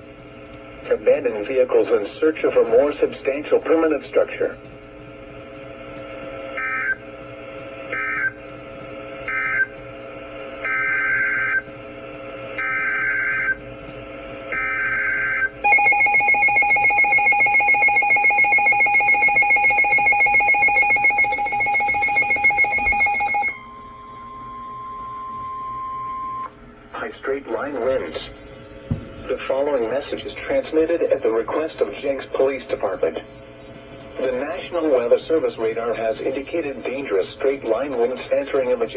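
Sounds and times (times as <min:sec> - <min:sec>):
two-tone attention signal: 0:15.6 - 0:28.4.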